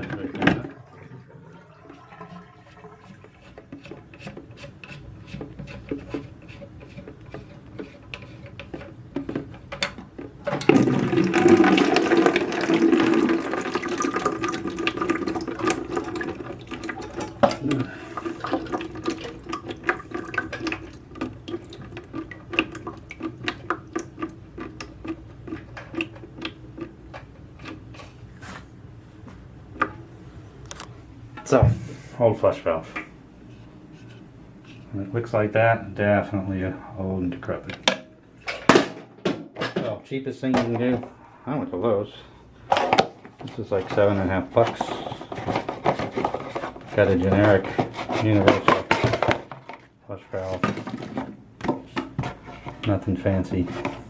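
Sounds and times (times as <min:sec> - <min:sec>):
water pouring from a bucket: 0:00.0 - 0:03.7, 0:10.6 - 0:24.9, 0:43.5 - 0:49.2
clicks and knocks of handling: 0:03.5 - 0:10.8, 0:37.6 - 0:40.0, 0:42.7 - 0:53.0.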